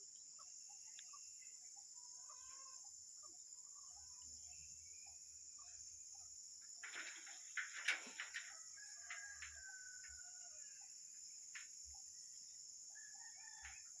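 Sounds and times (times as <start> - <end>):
high trill of insects: 1.1 - 14.0
faint rooster crowing: 2.0 - 3.0, 7.8 - 11.1, 12.9 - 14.0.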